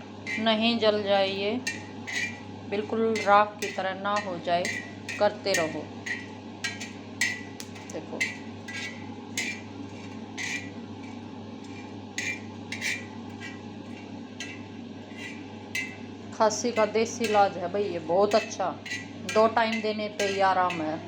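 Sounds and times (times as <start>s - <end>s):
steady low hum: 0.0s - 21.0s
utensil scraping griddle: 0.0s - 21.0s.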